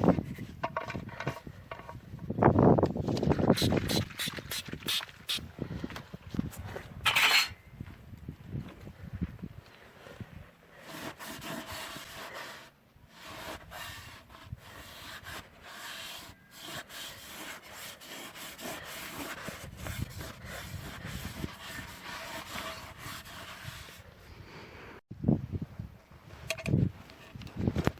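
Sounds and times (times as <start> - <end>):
scraping and rubbing: 7.0 - 7.6, 10.8 - 24.1.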